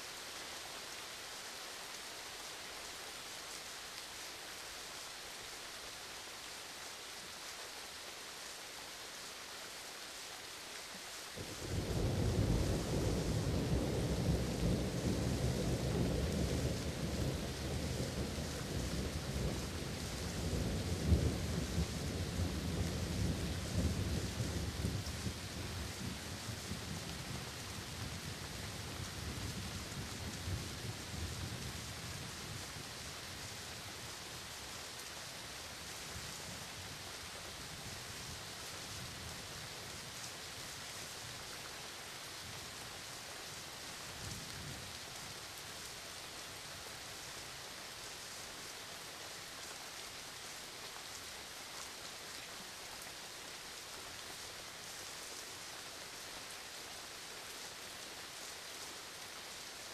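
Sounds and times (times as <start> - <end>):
steady rain falling: 0.0 - 59.9
low thunder rumble: 11.4 - 31.8.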